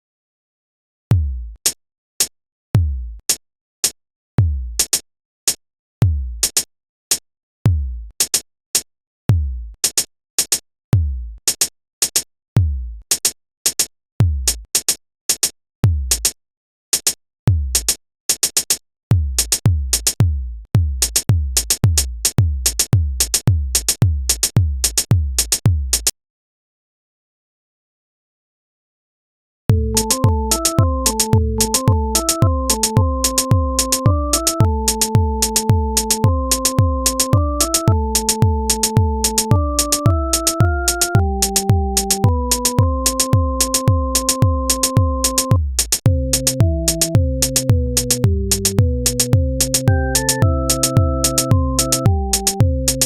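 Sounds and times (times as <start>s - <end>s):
hi-hat ticks: 21.0s - 26.1s, 30.0s - 53.0s.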